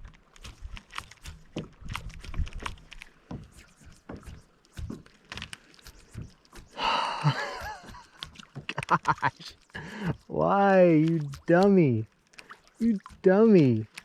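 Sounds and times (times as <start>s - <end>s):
fishing tackle knocks and clicks: 7.7s - 9.3s.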